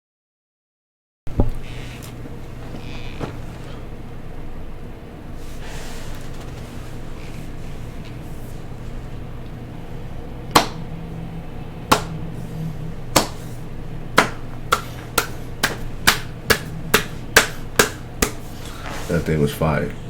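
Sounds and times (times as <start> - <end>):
steady low hum: 1.3 - 20.0
sharp knocks: 10.5 - 10.8, 11.9 - 12.2, 13.1 - 13.5, 14.2 - 18.5.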